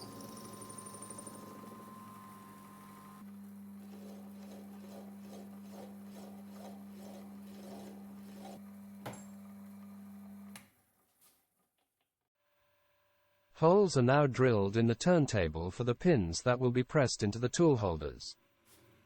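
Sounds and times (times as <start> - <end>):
electric motor humming: 0.0 - 9.0.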